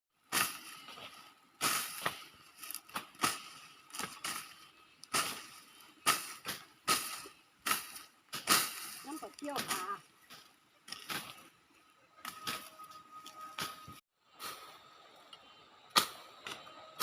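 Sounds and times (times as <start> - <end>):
hand tool slashing through grass: 0.3 - 10.0.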